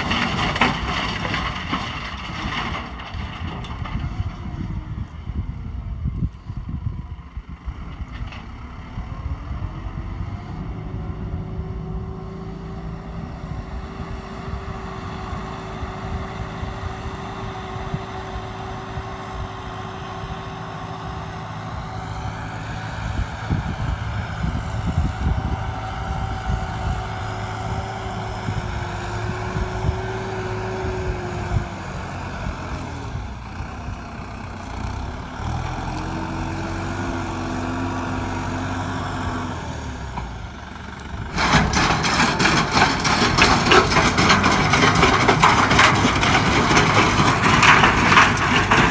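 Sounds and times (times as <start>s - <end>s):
tractor engine running: 0.0s - 48.9s
irregular clattering: 41.3s - 48.9s.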